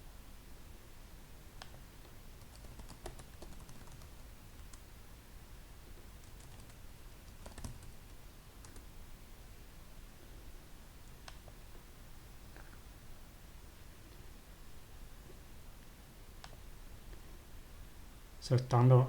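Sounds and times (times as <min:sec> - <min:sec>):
faint typing on keyboard: 0:01.6 - 0:04.9, 0:06.2 - 0:09.0.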